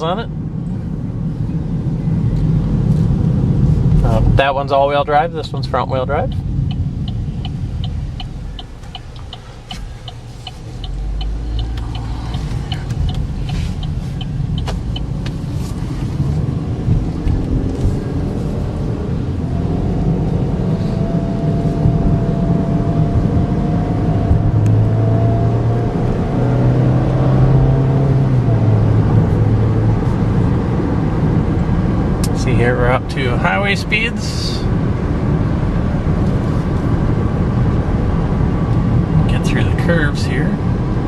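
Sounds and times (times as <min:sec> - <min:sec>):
car engine in cabin: 0:00.0 - 0:41.0
road noise: 0:00.0 - 0:41.0
light even ticking: 0:06.3 - 0:18.9.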